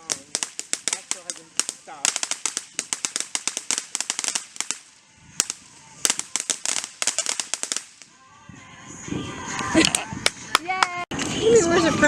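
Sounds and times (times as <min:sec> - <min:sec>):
firework crackling pops: 0:00.0 - 0:08.3.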